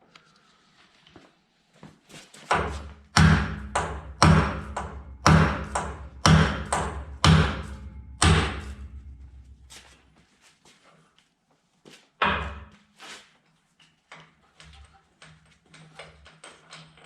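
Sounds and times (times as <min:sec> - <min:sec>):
hammer striking bolt: 0:02.6 - 0:09.5
metal ringing low: 0:07.5 - 0:09.7.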